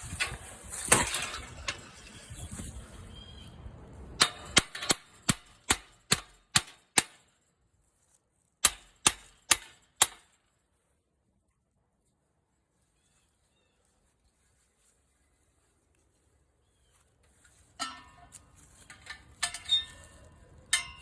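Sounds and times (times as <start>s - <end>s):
hammer striking steel fittings: 8.6s - 10.3s.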